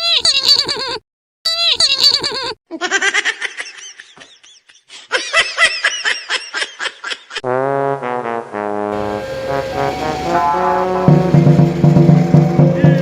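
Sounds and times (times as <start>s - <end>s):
high-pitched laughter: 0.0s - 7.4s
brass notes: 7.4s - 13.0s.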